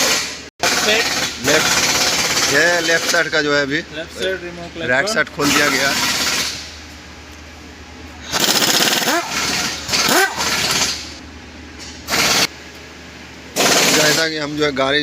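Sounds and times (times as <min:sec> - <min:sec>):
impact wrench hammering: 0:00.0 - 0:03.4, 0:13.6 - 0:14.3.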